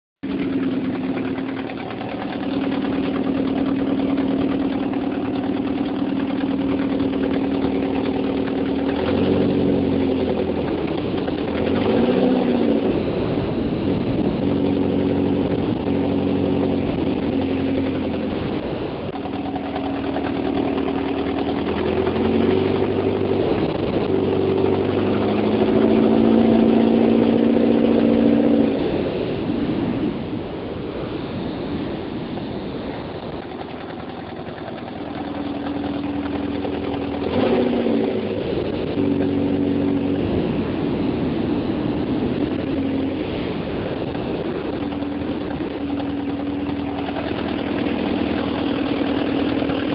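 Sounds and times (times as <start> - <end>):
car engine idling and revving: 0.2 - 49.9.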